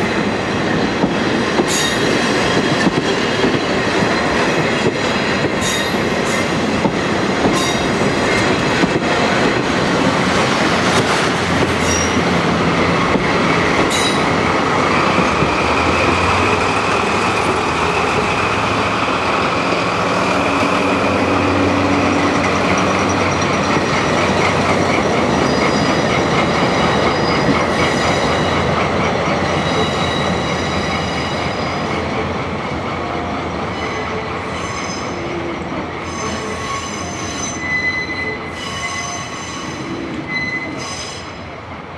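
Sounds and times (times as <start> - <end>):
train wheels squealing: 1.5 - 4.6, 5.6 - 6.6, 7.6 - 8.5, 11.6 - 12.4, 22.4 - 32.0, 33.7 - 35.3, 36.0 - 41.4.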